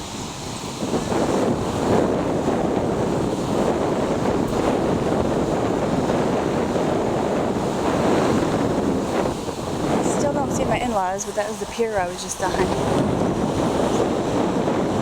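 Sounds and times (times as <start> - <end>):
surf breaking on beach: 0.0 - 15.0
wind buffeting microphone: 0.0 - 15.0.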